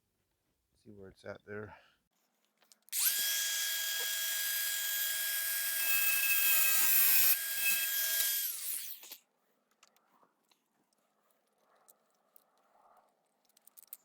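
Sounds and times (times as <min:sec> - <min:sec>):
grinder whining: 0:02.9 - 0:09.2.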